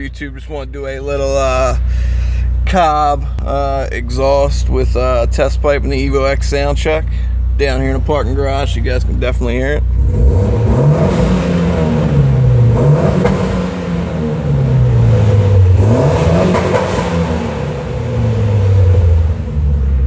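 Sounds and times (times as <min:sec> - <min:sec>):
car engine revving: 0:00.7 - 0:20.0.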